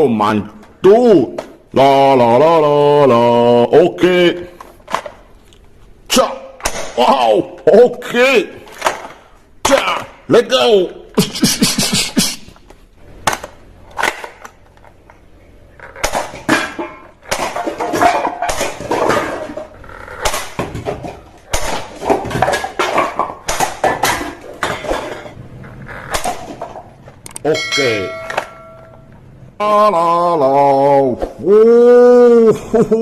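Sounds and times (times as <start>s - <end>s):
hard objects clattering: 12.6s - 29.4s.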